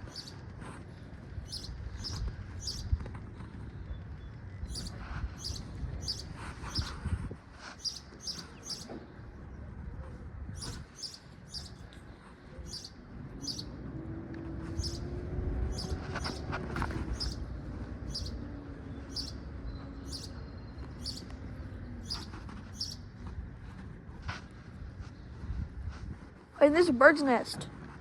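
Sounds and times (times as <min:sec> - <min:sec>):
small bird chirping: 0:00.0 - 0:00.4, 0:01.4 - 0:03.0, 0:04.2 - 0:06.9, 0:07.8 - 0:09.0, 0:10.6 - 0:12.0, 0:12.6 - 0:13.8, 0:14.7 - 0:15.1, 0:15.7 - 0:23.1.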